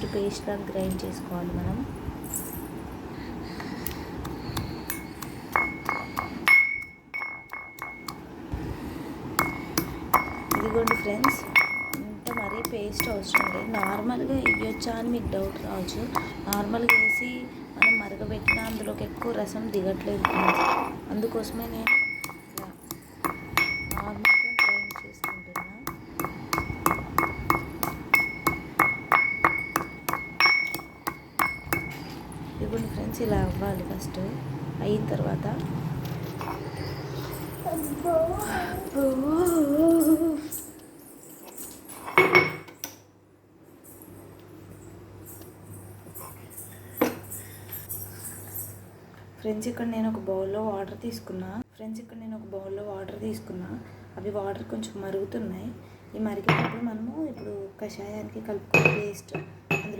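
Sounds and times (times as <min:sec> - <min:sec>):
pestle striking in a mortar: 0:04.5 - 0:08.2, 0:21.9 - 0:32.1.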